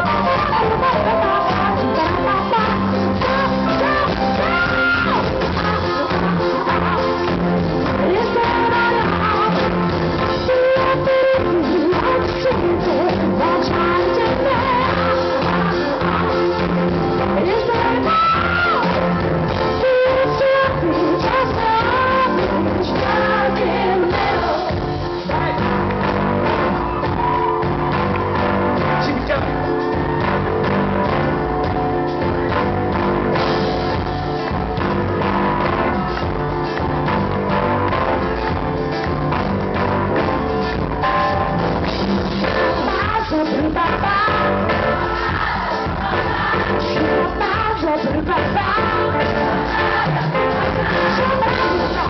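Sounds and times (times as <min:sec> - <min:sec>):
person singing: 0:00.0 - 0:31.3, 0:42.4 - 0:52.0
live pop band playing: 0:00.0 - 0:52.0.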